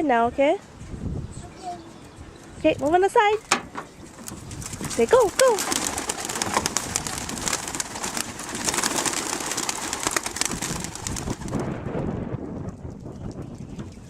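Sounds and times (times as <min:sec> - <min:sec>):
pigeon wings flapping: 0:04.2 - 0:11.7.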